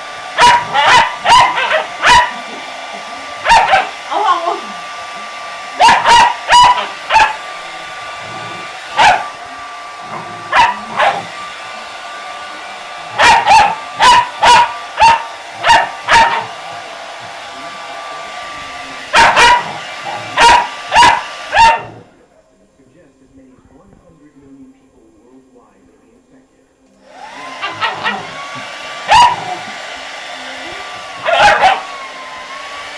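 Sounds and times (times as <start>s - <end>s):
hair dryer hissing and whining: 0.0s - 22.1s, 26.9s - 32.9s
puppy barking: 0.4s - 2.6s, 3.4s - 4.0s, 5.8s - 7.5s, 8.8s - 9.4s, 10.1s - 11.4s, 13.1s - 16.6s, 19.1s - 22.0s, 27.6s - 29.8s, 31.2s - 32.0s.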